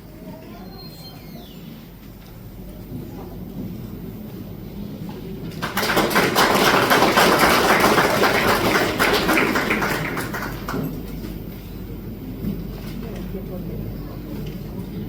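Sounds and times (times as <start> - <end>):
audience applauding: 5.5 - 11.3.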